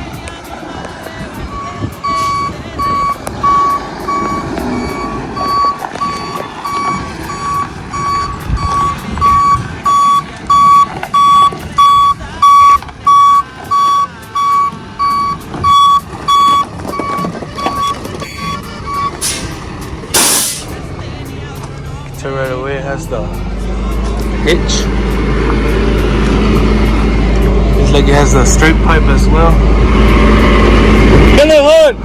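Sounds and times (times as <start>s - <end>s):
truck backup alarm beeping: 0.0s - 20.8s
truck engine running: 0.0s - 32.0s.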